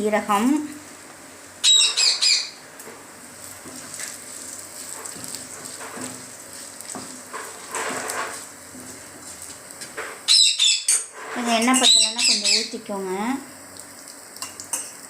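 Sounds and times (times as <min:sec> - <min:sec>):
spices sizzling in a pan: 0:02.6 - 0:10.3
spoon stirring and scraping: 0:04.8 - 0:10.0.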